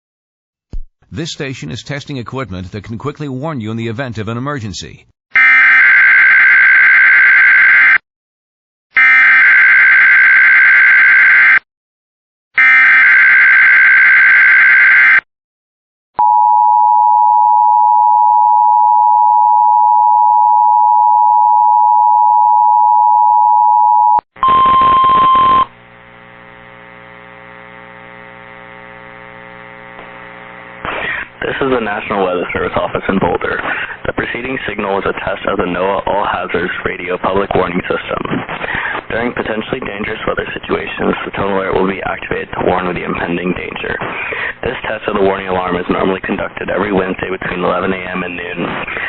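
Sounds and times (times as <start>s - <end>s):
two-tone attention signal: 16.2s - 25.7s
loud single tone: 16.2s - 25.8s
shrill data tones: 24.4s - 25.7s.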